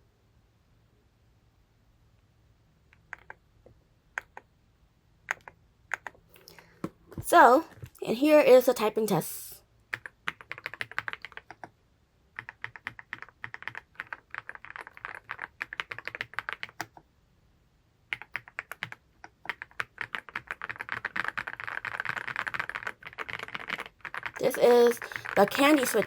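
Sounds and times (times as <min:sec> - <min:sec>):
mechanical keyboard typing: 0:03.0 - 0:03.4, 0:05.3 - 0:06.2, 0:09.9 - 0:11.7, 0:12.4 - 0:17.0, 0:18.1 - 0:26.0.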